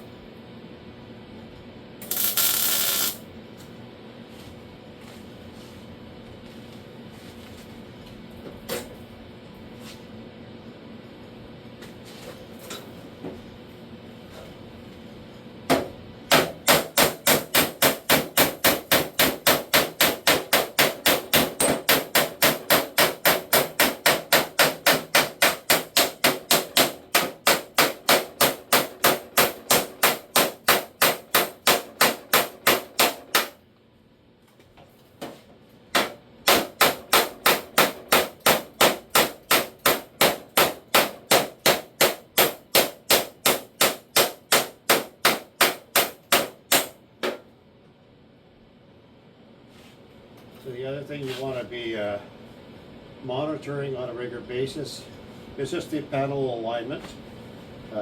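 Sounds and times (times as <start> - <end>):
hammer striking steel sheet: 36.0 - 47.4.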